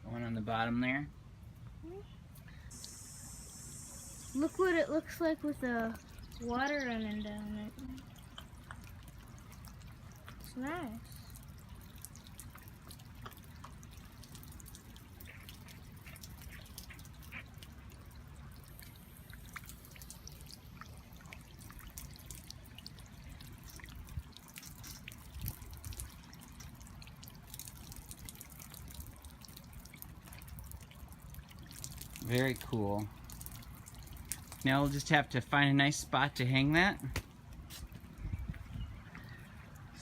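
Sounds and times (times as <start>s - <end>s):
low steady rumble: 0.0s - 40.0s
water trickling and dripping: 0.0s - 40.0s.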